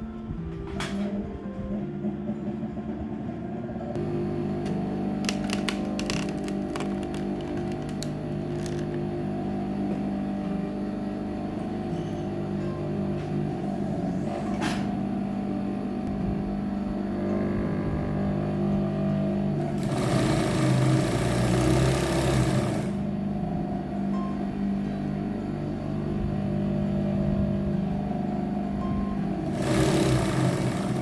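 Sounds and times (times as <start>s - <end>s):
electric sewing machine running: 3.9s - 11.9s, 16.6s - 23.6s, 29.1s - 31.0s.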